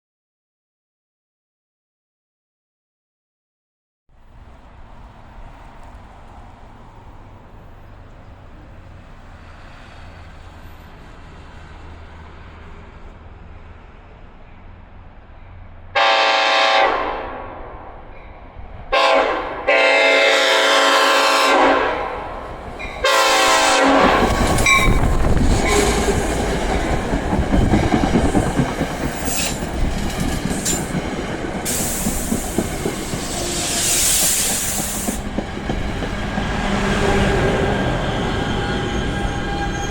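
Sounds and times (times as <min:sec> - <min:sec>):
train air horn blasts: 0:16.0 - 0:17.8, 0:18.9 - 0:22.4, 0:23.0 - 0:26.2
train wheels clicking over rail joints: 0:24.1 - 0:36.7
loud hiss: 0:31.7 - 0:35.3.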